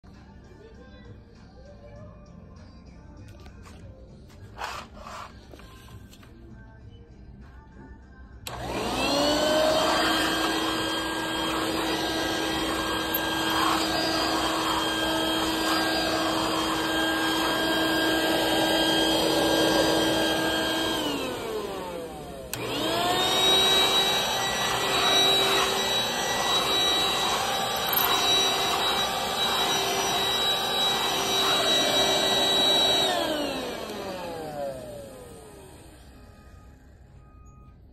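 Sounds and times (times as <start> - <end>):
vacuum cleaner motor whining: 8.5 - 37.6.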